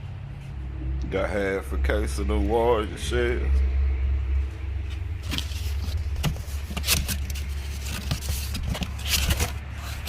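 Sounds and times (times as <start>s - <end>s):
low rumble: 0.0s - 7.9s
packaging scraping and knocking: 5.2s - 10.0s.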